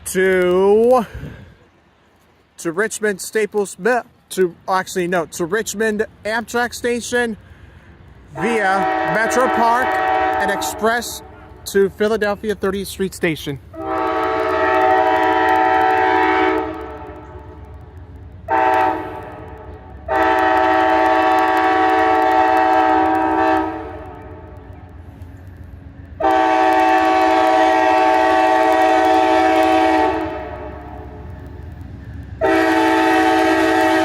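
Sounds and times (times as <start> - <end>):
low train rumble: 0.0 - 34.0
locomotive air horn blasts: 8.3 - 11.4, 13.7 - 17.6, 18.5 - 25.2, 26.2 - 31.2, 32.4 - 34.0.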